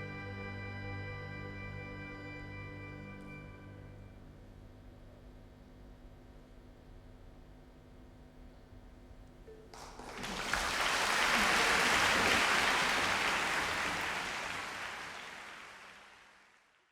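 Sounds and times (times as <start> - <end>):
audience applauding: 9.6 - 16.9.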